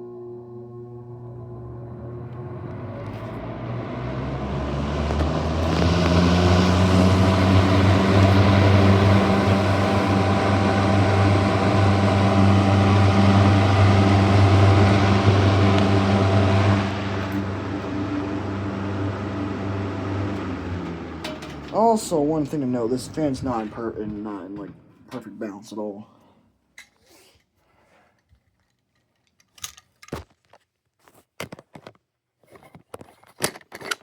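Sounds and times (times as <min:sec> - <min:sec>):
box fan humming: 0:00.0 - 0:25.1.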